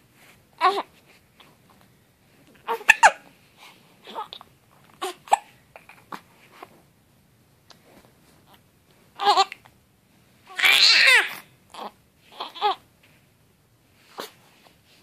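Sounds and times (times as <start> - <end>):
baby crying: 10.5 - 12.8.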